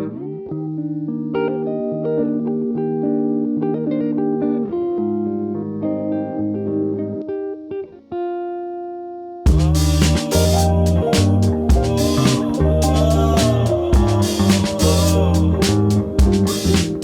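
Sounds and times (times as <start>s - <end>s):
bass line: 9.5s - 17.0s.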